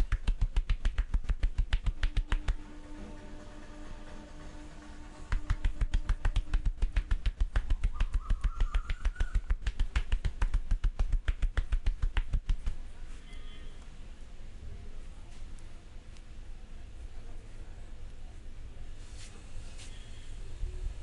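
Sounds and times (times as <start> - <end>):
hands slapping on body: 0.0 - 2.7, 5.1 - 12.9.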